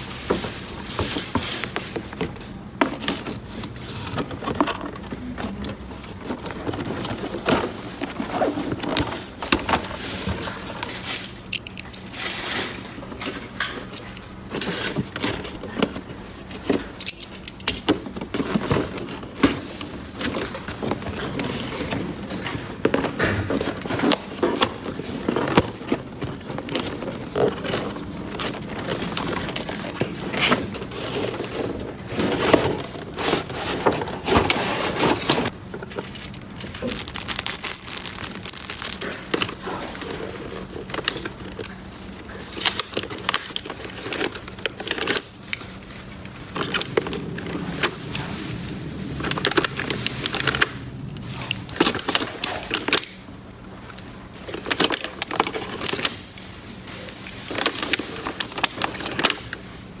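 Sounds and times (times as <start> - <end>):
plastic toy pieces clicking and rustling: 24.0 - 41.8.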